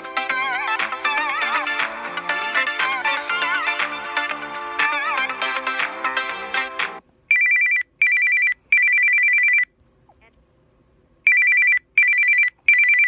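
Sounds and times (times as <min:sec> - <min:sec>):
music ringtone: 0:00.0 - 0:07.0.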